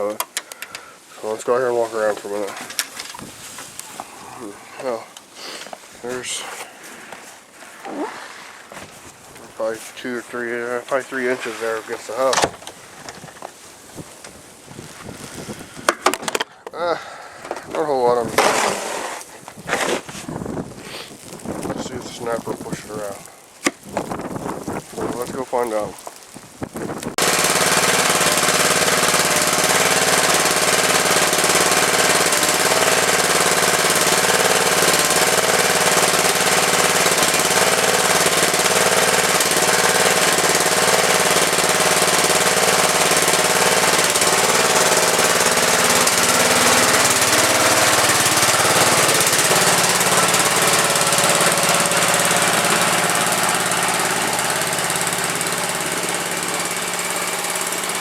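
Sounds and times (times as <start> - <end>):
riding lawnmower engine running: 0.0 - 26.3, 26.9 - 58.0.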